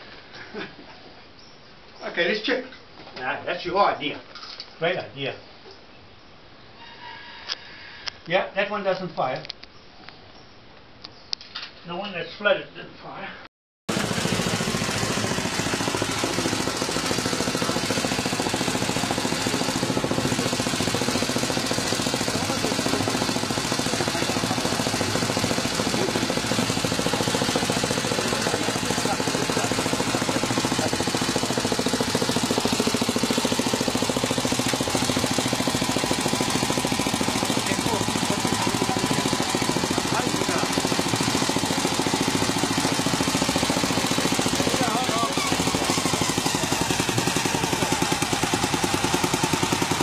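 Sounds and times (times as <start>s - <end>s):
motorcycle engine idling: 13.9s - 50.0s.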